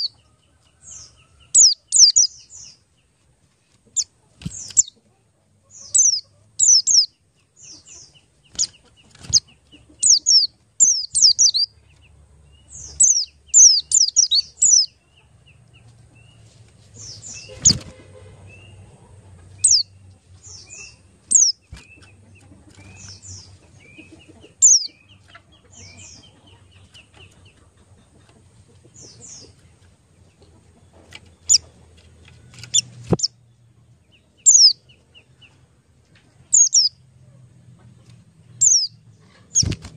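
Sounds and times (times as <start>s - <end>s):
high bird chirps: 0.8s - 2.8s, 3.9s - 5.0s, 5.8s - 11.8s, 12.7s - 15.0s, 19.6s - 19.9s, 20.5s - 22.2s, 22.8s - 26.5s, 32.6s - 33.4s, 34.4s - 34.9s, 36.5s - 37.0s, 38.6s - 39.9s
soft rapid bird twittering: 0.8s - 2.8s, 3.9s - 5.0s, 5.6s - 15.2s, 19.5s - 27.7s, 34.3s - 35.6s, 36.5s - 37.0s, 38.6s - 39.9s.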